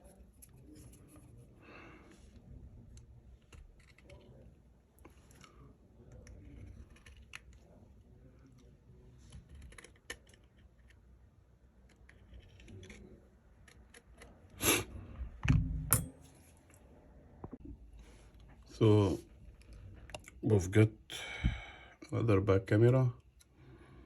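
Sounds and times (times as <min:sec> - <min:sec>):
low thump: 0:15.4 - 0:16.0.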